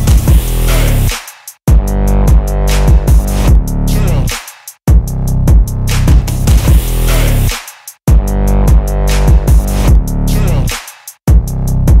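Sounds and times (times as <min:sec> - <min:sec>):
electronic dance music: 0:00.0 - 0:04.7, 0:05.9 - 0:11.1.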